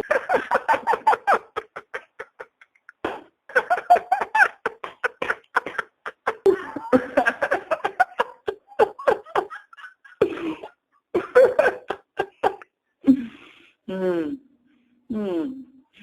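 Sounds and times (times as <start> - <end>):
man laughing: 0.0 - 12.7.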